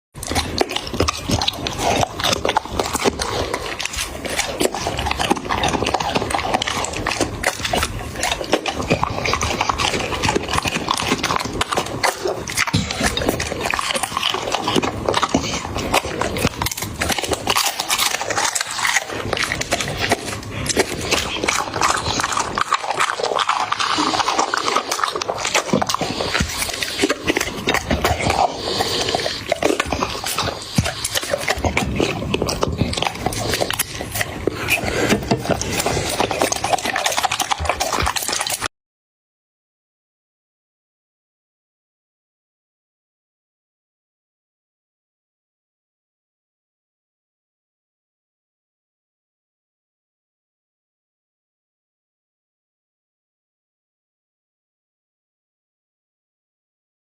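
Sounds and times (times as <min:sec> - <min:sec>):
puppy eating: 0:00.2 - 0:38.7.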